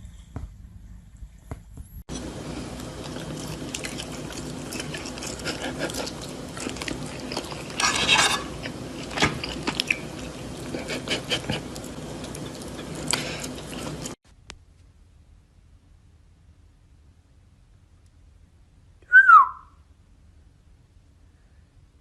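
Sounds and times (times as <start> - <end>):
crunchy chewing: 2.1 - 14.2.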